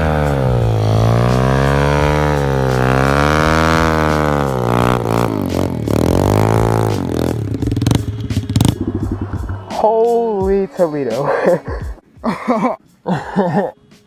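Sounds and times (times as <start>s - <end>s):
engine knocks: 0.0s - 9.7s
motorbike engine revving: 0.0s - 9.8s.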